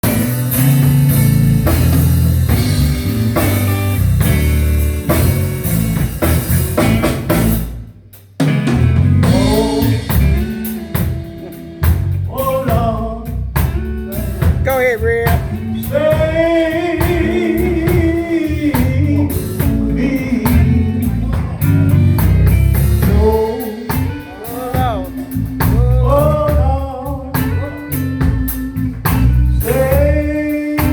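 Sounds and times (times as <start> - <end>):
gospel band playing: 0.0 - 30.9
singing with wide vibrato: 9.2 - 11.1, 22.8 - 28.2, 29.5 - 30.9.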